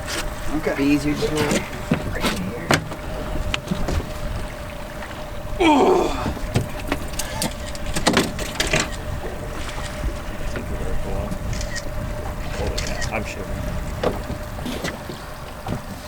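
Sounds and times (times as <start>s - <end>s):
sharp knocks on boat: 0.0s - 5.3s, 6.2s - 16.0s
boat motor running: 0.0s - 16.0s
vocal grunt: 5.6s - 6.4s.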